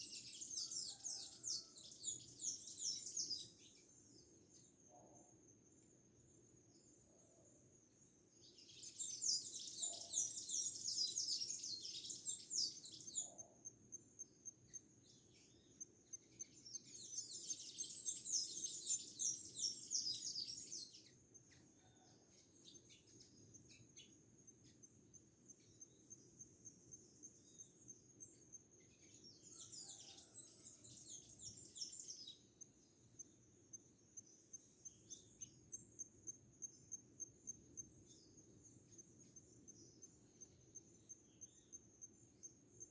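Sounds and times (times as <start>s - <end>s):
insect chirping: 31.2s - 42.9s.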